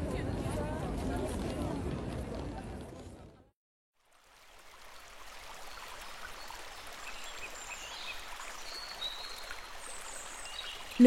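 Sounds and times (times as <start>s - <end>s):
stream of flowing water: 3.9s - 11.0s.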